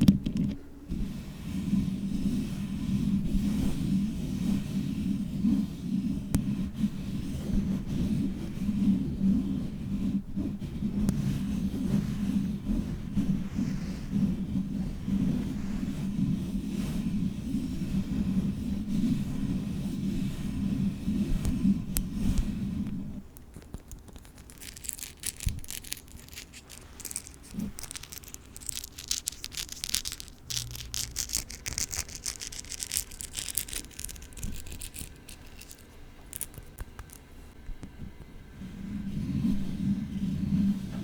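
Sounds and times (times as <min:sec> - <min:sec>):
fingernails scratching on microphone: 0:20.4 - 0:37.2.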